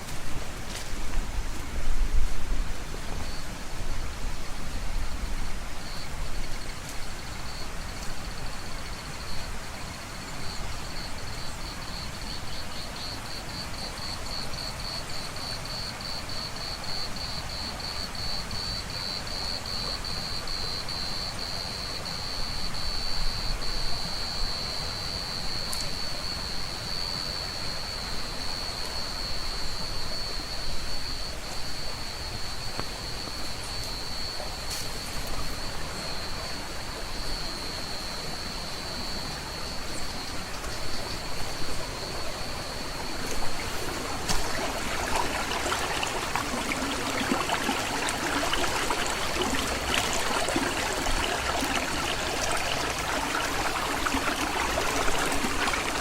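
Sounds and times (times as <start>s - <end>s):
waterfall rushing: 40.2s - 56.0s.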